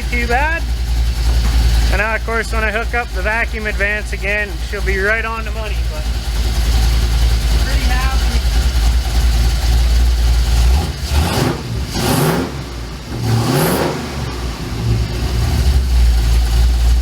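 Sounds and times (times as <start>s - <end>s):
engine idling with throttle blips: 0.0s - 17.0s.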